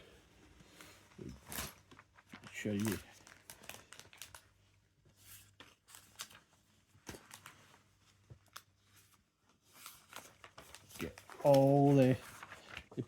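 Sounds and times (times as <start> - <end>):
paper pages turning: 5.1 - 7.8, 8.4 - 13.0.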